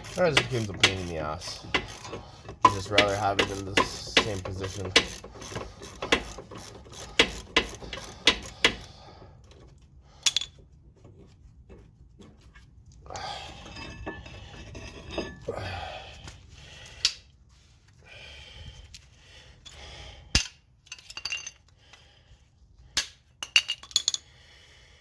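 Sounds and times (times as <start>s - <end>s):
metal tools clinking: 0.0s - 8.9s, 13.6s - 15.5s, 20.9s - 21.7s.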